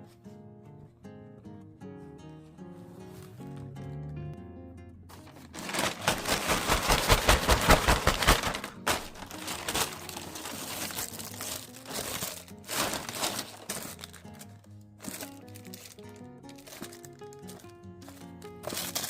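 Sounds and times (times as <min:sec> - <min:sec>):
packaging crinkling: 0:05.1 - 0:19.0.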